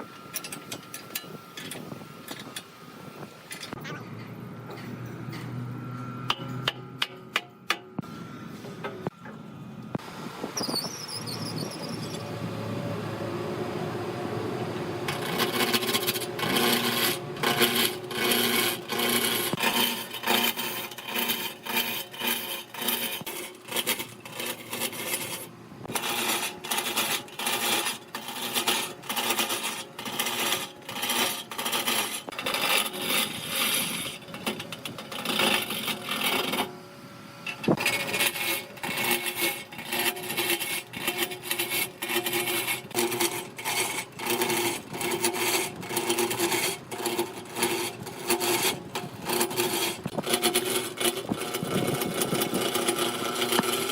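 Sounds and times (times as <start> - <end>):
lathe tool scraping spinning wood: 14.9 - 36.8, 37.5 - 53.9.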